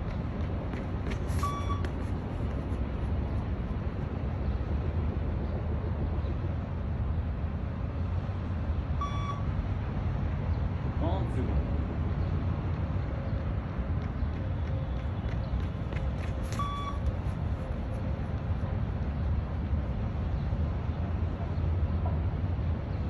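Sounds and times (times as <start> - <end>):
steady low rumble: 0.0 - 15.0
short electronic beeps: 1.4 - 1.9, 9.0 - 9.5, 16.6 - 17.1.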